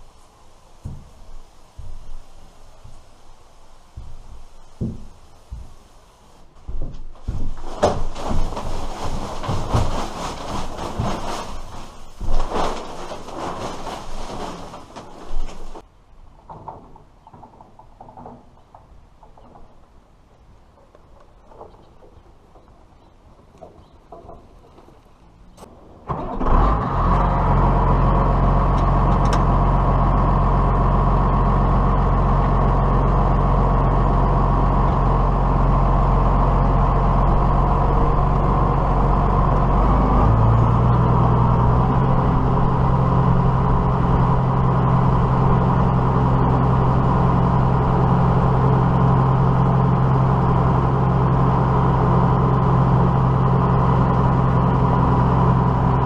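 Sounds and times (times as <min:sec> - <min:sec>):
diesel tractor engine running: 0:25.3 - 0:56.0.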